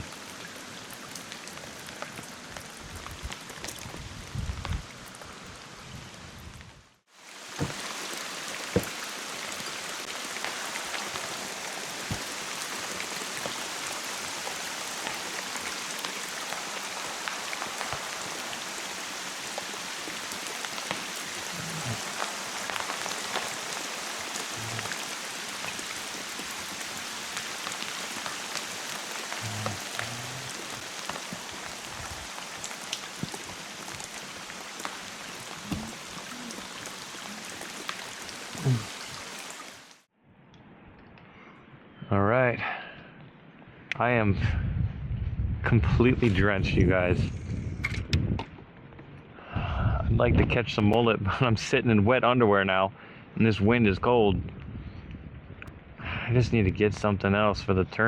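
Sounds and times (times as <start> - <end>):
heavy rain hissing: 0.0 - 40.1
raindrops ticking: 7.3 - 40.0.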